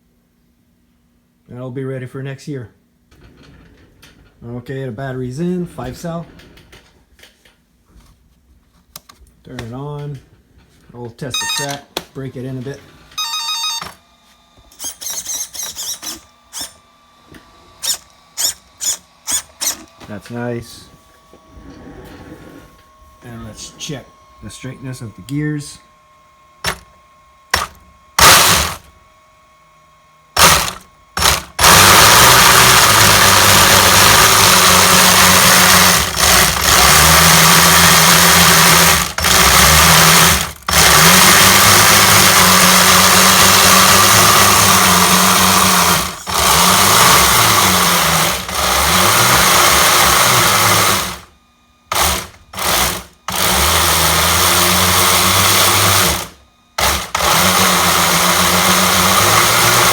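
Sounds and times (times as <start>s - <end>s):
electric motor spinning track: 12.6s - 59.9s.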